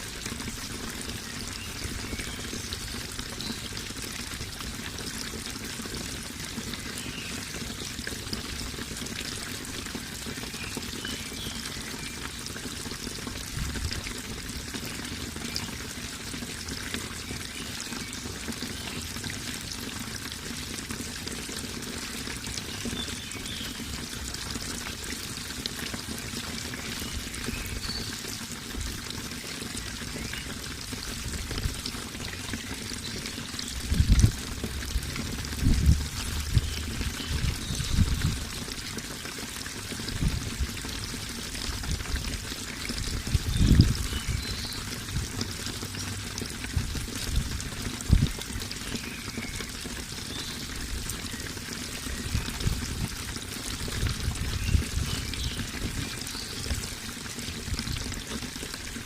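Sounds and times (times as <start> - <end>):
running water: 0.0 - 59.0.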